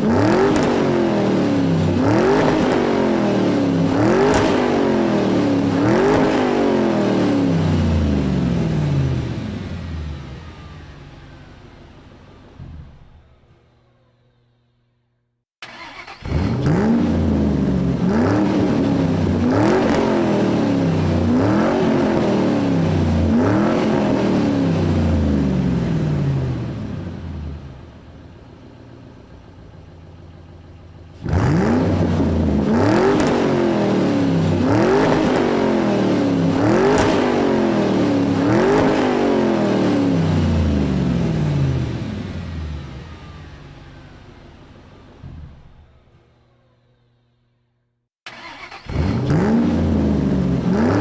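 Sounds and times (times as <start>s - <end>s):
engine revving: 0.0s - 11.4s, 15.6s - 27.8s, 31.1s - 44.0s, 48.3s - 51.0s.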